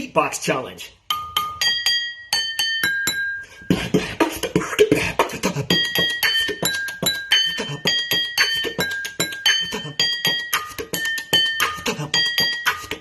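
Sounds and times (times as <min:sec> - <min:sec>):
beatboxing: 0:03.6 - 0:13.0.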